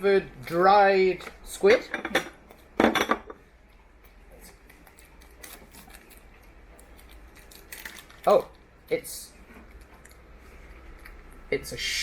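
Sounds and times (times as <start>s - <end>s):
packet crinkling: 4.6s - 8.7s.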